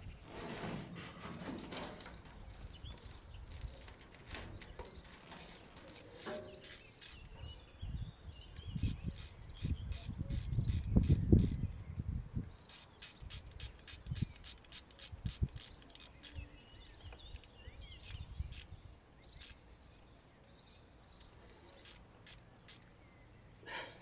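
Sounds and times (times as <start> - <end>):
sharp clicks and ticks: 4.6 - 7.4, 12.7 - 18.7
faint bird chirps: 4.6 - 12.0, 12.6 - 23.8.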